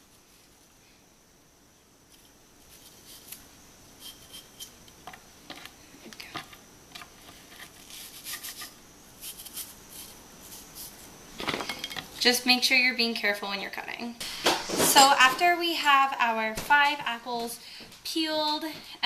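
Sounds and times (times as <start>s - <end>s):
knife slicing apple: 2.1s - 4.8s, 7.4s - 11.1s.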